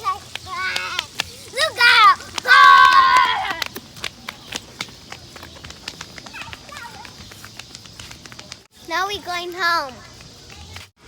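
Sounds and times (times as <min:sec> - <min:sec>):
running footsteps: 0:00.0 - 0:11.0.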